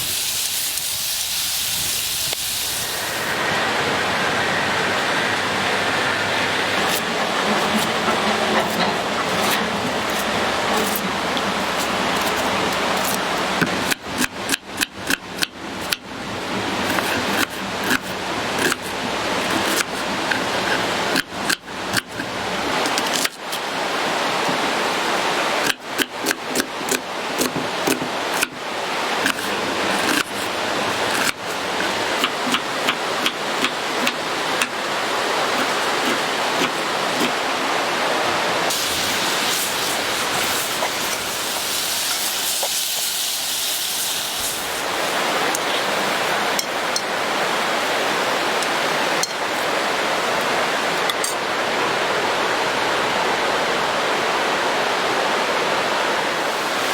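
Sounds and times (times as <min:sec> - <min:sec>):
food sizzling in a pan: 0:00.0 - 0:03.5, 0:38.7 - 0:47.9.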